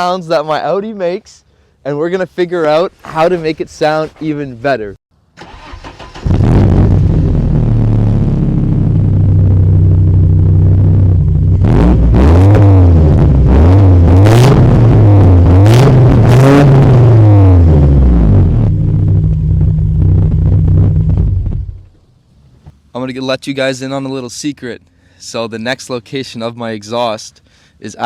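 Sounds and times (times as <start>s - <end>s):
car engine idling and revving: 5.5s - 22.2s.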